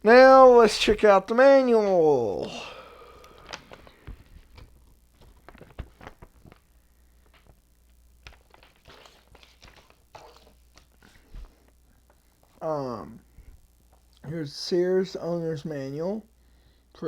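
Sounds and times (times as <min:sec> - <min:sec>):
paper rustling: 0:03.2 - 0:07.6, 0:08.2 - 0:12.6.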